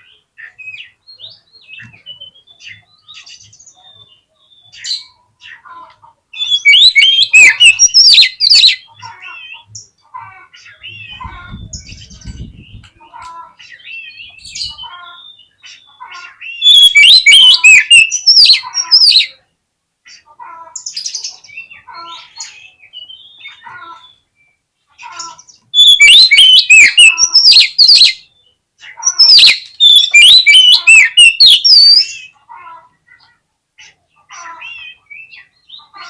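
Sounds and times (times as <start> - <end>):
bird whistling song: 0.4 - 5.2, 6.4 - 9.7, 13.8 - 19.3, 25.7 - 32.4.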